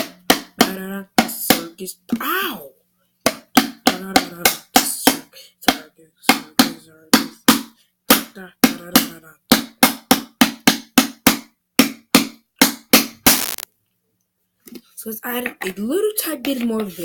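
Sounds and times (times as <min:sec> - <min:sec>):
slime clicks and pops: 0:13.3 - 0:13.6.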